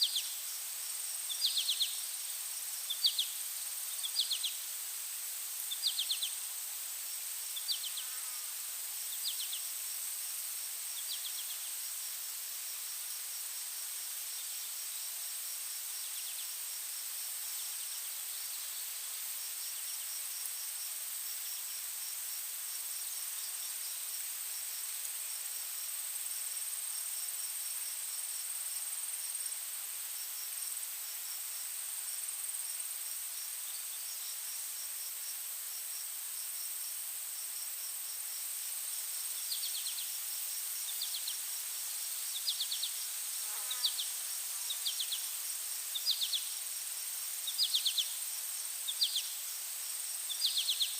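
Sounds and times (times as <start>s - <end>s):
crickets chirping: 0.0s - 50.9s
steady high insect trill: 0.0s - 50.9s.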